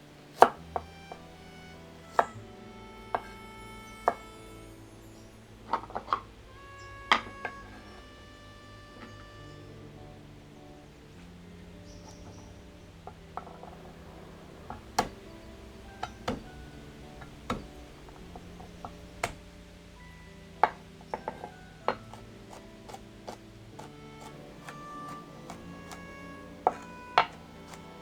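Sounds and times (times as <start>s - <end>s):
soft background music: 0.0s - 28.0s
kitchen utensils and dishes clinking: 3.1s - 8.0s, 13.3s - 19.5s.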